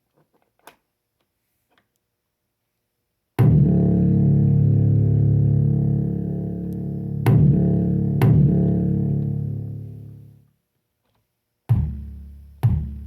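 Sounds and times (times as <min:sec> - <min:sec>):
buzzy synthesized bass notes: 0:03.4 - 0:10.4.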